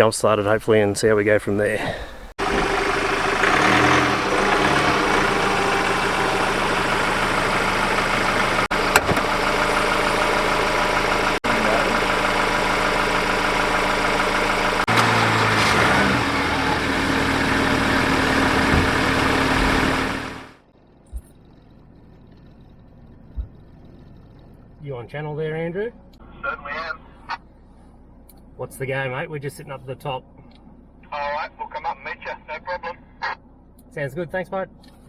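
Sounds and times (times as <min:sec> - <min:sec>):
vehicle engine running: 0:00.0 - 0:24.8.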